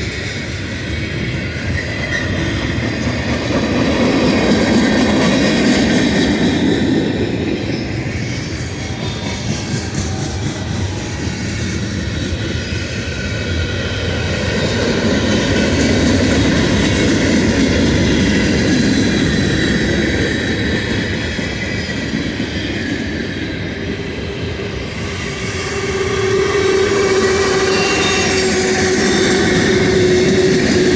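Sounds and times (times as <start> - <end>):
freight train rumbling past: 0.0 - 30.9.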